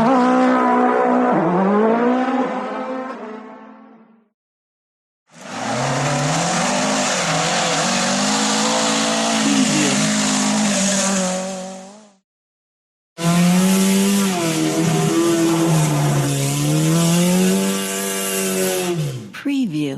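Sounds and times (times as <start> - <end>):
rally car engine running hard: 5.4 - 12.2, 13.2 - 19.2.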